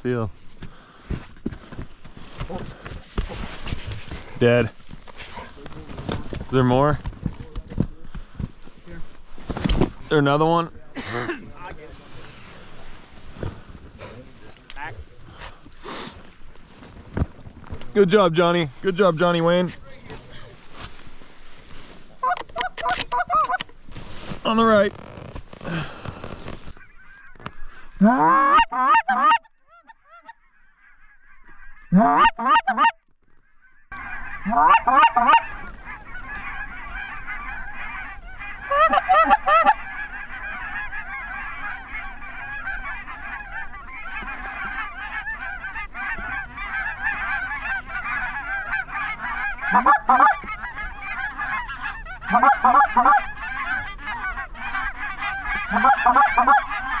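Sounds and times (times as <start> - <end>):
geese honking: 33.9 - 57.0.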